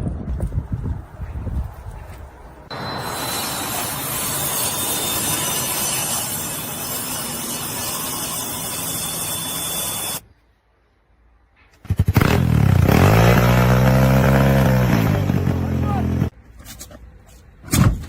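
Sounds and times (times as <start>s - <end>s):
steady machine hissing: 2.7s - 10.2s
engine starting and running: 11.8s - 16.3s.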